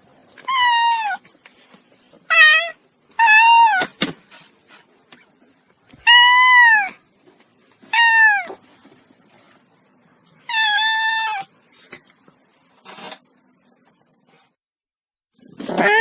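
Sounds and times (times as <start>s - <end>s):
kitten meowing: 2.3s - 3.8s, 6.0s - 7.0s, 7.9s - 8.6s, 10.5s - 11.5s, 15.7s - 16.0s.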